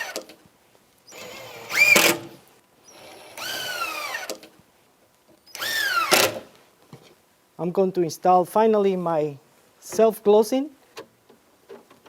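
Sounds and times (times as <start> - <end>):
power drill driving screws: 0.0 - 0.3, 1.1 - 4.5, 5.5 - 6.5.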